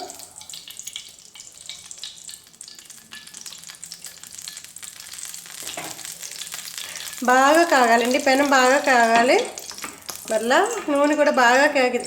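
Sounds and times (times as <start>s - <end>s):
oil sizzling in a frying pan: 0.0s - 12.0s.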